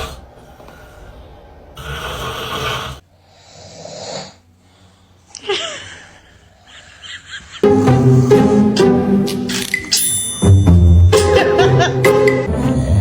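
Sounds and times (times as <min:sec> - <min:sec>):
man snoring: 0:00.0 - 0:00.4, 0:01.8 - 0:04.5
soft breath: 0:00.0 - 0:07.0.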